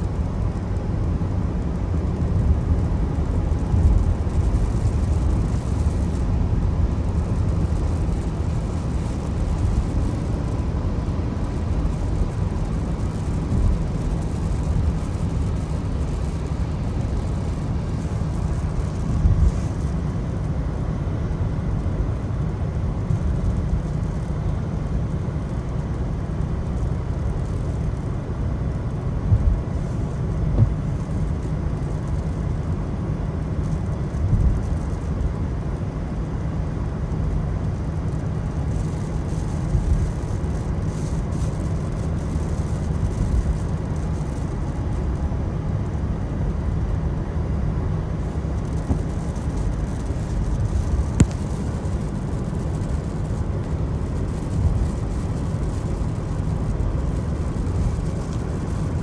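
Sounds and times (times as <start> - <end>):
car tyres and engine rumble: 0.0 - 59.0
rain: 0.0 - 59.0
small bumps: 30.4 - 31.3, 48.2 - 59.0.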